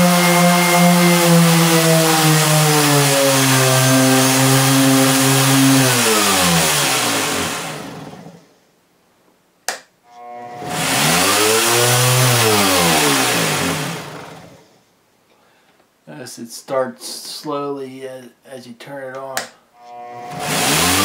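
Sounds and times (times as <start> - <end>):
sander motor humming and winding down: 0.0 - 8.4, 10.1 - 14.6, 19.8 - 21.0.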